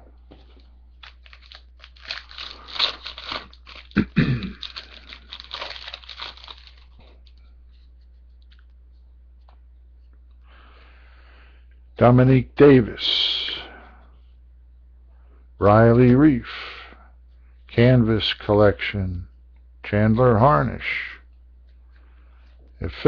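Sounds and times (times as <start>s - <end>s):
faint low hum: 0.0s - 23.0s
foil wrapper crinkling: 0.5s - 7.4s.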